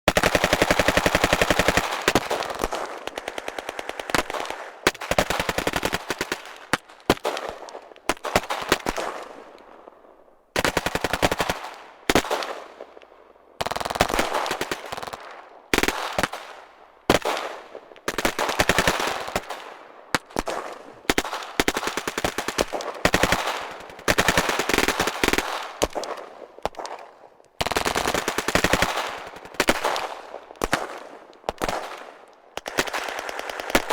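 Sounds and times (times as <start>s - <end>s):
machine-gun bursts: 0.1s - 6.5s, 32.6s - 33.9s.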